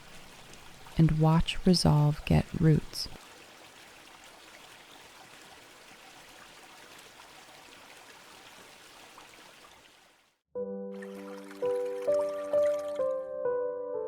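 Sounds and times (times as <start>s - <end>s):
trickling stream: 0.0s - 13.2s.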